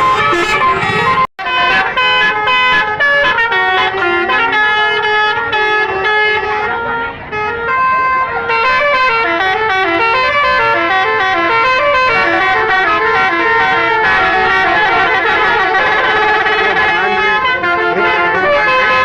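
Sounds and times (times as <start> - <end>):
multi-tone musical bus horns: 0.0 - 19.0.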